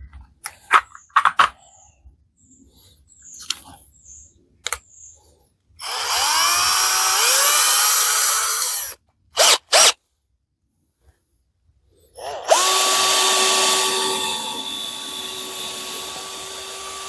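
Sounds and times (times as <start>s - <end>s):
cordless drill drilling: 5.8s - 10.0s, 12.2s - 17.0s.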